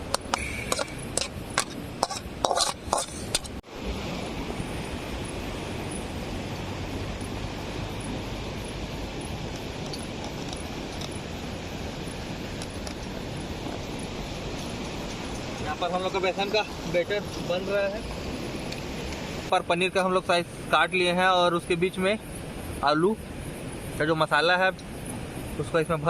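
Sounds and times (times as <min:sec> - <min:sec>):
steady background hiss: 0:00.0 - 0:26.0
metal spoon scraping a pan: 0:00.2 - 0:03.6.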